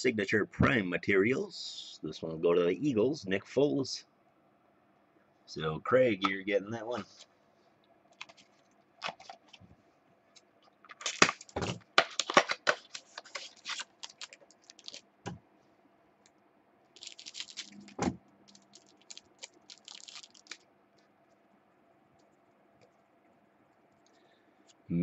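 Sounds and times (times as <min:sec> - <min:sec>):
trading cards being handled: 0:08.2 - 0:09.6, 0:10.4 - 0:15.0, 0:17.0 - 0:20.6.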